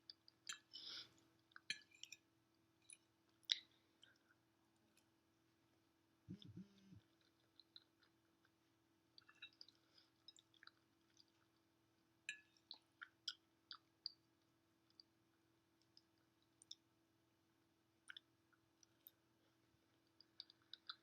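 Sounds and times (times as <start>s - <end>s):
person chewing with mouth clicks: 6.3s - 8.5s, 12.3s - 14.2s, 18.0s - 19.1s, 20.0s - 21.0s.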